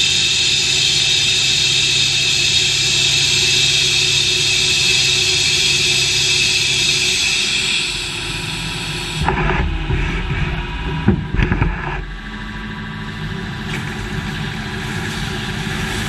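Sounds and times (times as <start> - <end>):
machinery hissing: 0.0 - 12.4
machinery knocks and clanks: 9.2 - 12.2.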